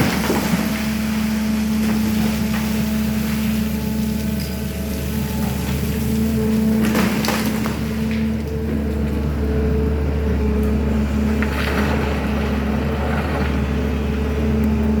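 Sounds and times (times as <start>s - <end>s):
excavator diesel engine humming: 0.0s - 15.0s.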